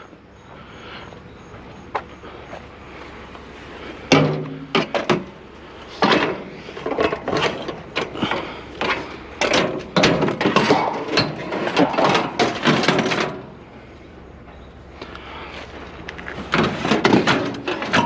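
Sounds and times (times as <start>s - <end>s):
scrap items knocking and rattling: 4.1s - 5.4s, 6.0s - 13.5s, 16.3s - 18.0s.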